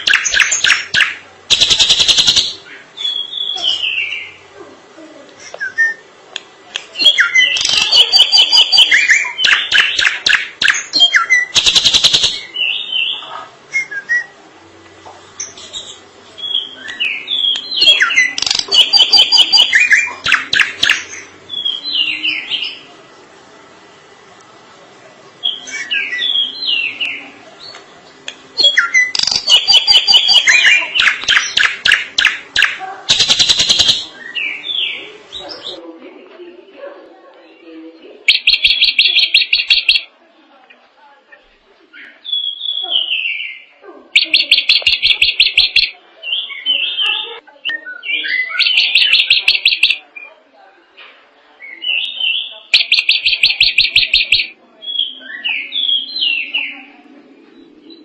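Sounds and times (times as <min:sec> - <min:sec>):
bird singing whistled notes and trills: 0:00.0 - 0:04.4, 0:05.5 - 0:06.1, 0:07.0 - 0:14.4, 0:15.4 - 0:22.9, 0:25.4 - 0:35.8, 0:38.3 - 0:40.1, 0:42.0 - 0:50.4, 0:51.6 - 0:56.9.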